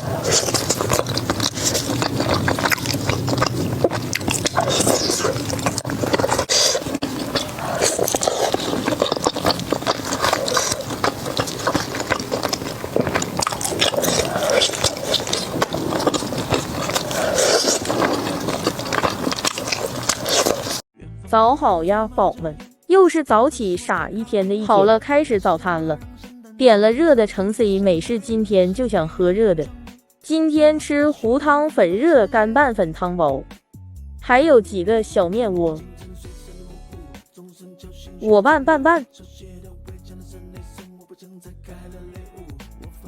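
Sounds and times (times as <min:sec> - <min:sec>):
crunching and chewing crispy food: 0:00.0 - 0:20.8.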